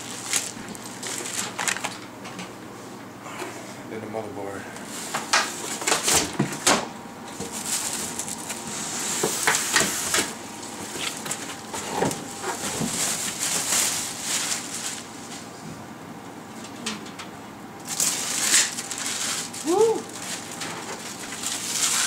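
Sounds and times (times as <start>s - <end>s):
packaging rustling and crinkling: 0.0s - 2.0s, 7.3s - 8.7s, 10.6s - 15.5s, 17.8s - 22.0s.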